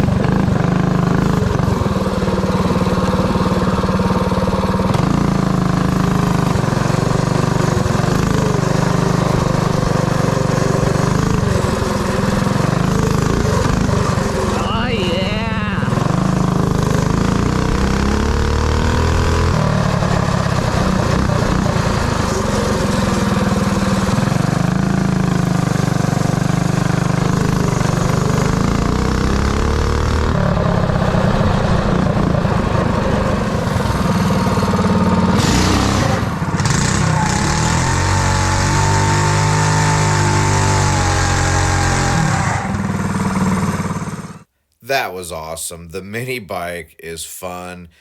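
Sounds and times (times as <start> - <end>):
mini bike engine revving: 0.0 - 44.5.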